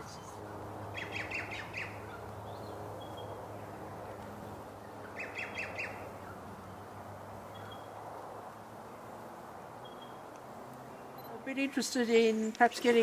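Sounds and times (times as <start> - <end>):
bird calling sharp notes: 0.9 - 2.2, 5.0 - 6.4.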